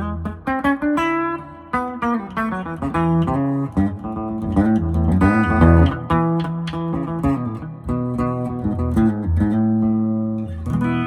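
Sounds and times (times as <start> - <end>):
electric guitar notes: 4.9 - 6.4.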